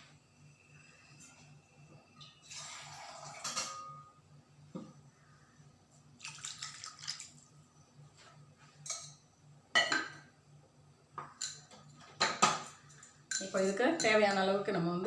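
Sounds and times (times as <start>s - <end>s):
water splashing into a pot: 2.4s - 3.8s, 6.2s - 7.6s
metal pot clinking: 3.4s - 4.1s, 8.8s - 10.3s, 11.3s - 14.3s.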